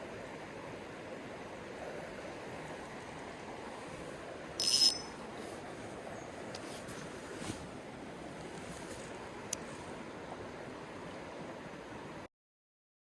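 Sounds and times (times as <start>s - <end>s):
creek water flowing: 0.0s - 12.1s
sharp high-pitched ringing sound: 4.6s - 5.2s.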